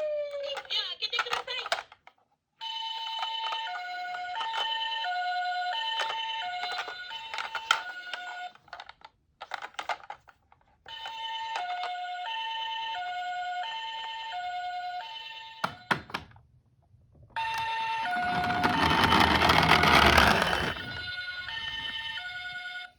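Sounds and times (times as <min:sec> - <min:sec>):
toy two-tone sirens: 0:02.6 - 0:08.6, 0:10.9 - 0:16.0, 0:17.4 - 0:22.9.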